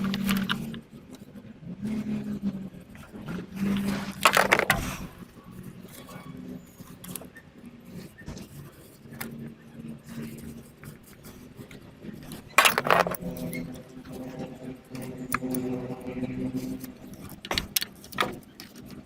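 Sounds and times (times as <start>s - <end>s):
metal tools clinking on engine parts: 4.2s - 4.8s, 12.3s - 14.2s.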